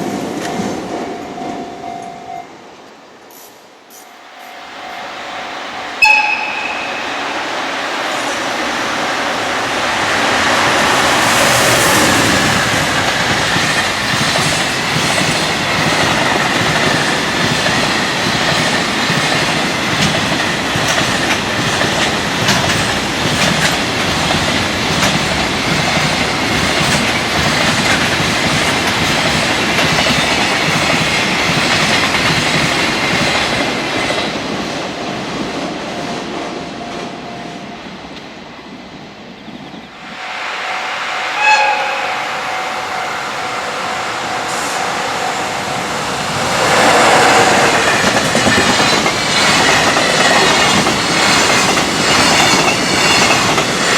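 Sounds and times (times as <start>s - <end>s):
freight train rumble: 0.0s - 53.9s
steady high whine: 3.9s - 9.8s, 39.9s - 47.1s.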